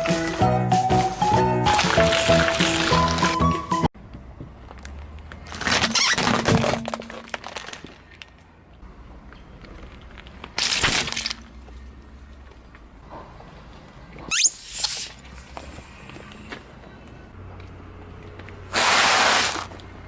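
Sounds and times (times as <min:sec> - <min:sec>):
brittle object crunching: 0:05.4 - 0:08.4.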